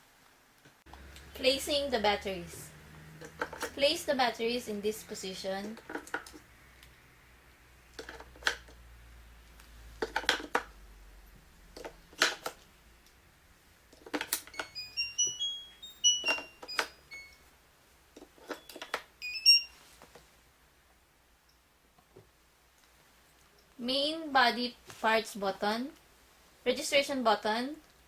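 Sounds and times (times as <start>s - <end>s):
door lock electronic beeps: 14.5s - 17.4s, 18.5s - 19.8s.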